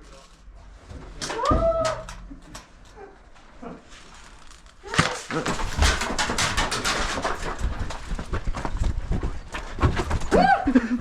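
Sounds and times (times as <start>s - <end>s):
footsteps on rough ground: 7.5s - 10.3s.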